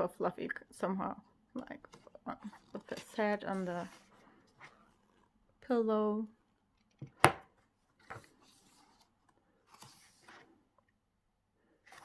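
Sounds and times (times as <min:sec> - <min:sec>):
book pages rustling: 0:07.9 - 0:10.9.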